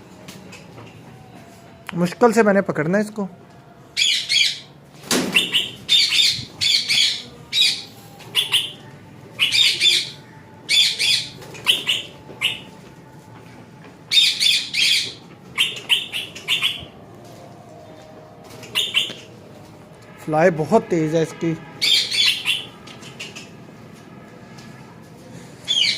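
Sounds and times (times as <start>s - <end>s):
parrots squawking: 4.0s - 4.7s, 5.3s - 8.8s, 9.4s - 12.8s, 14.1s - 16.9s, 18.6s - 19.3s, 21.8s - 23.6s, 25.7s - 25.9s.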